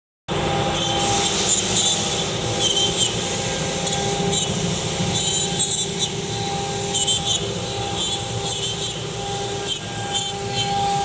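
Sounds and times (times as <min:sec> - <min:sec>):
router spindle whine: 0:00.3 - 0:11.0
bit rasping into wood: 0:06.9 - 0:11.0.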